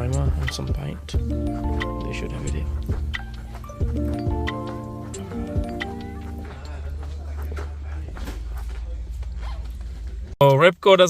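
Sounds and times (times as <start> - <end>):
steady drum beat: 0.0 - 6.7
bass line: 0.0 - 7.0
sustained chords: 1.2 - 7.0.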